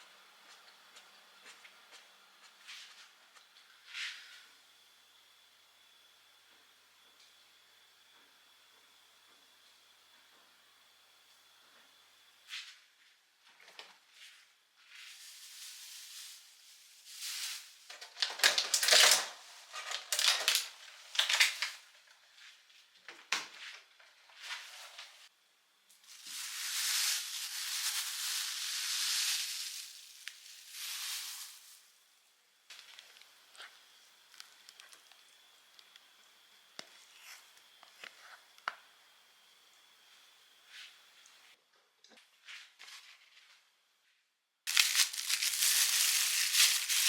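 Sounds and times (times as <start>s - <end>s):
kitchen clattering and crinkling: 14.9s - 22.3s, 26.0s - 31.9s, 44.7s - 47.0s.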